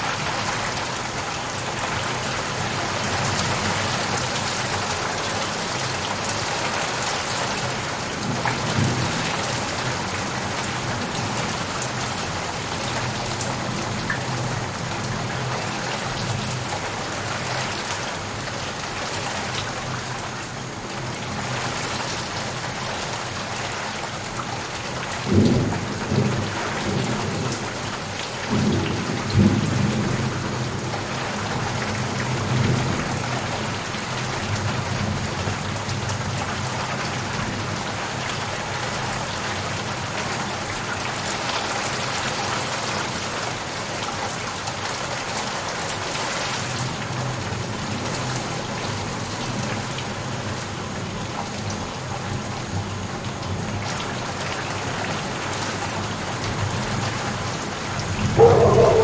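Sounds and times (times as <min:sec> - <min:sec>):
steady rain falling: 0:00.0 - 0:59.0
rolling thunder: 0:58.3 - 0:59.0.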